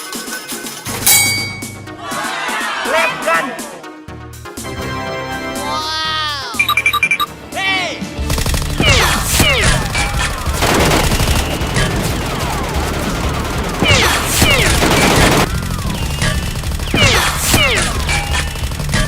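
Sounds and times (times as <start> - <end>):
rapid gunfire sound effects: 8.2 - 19.0.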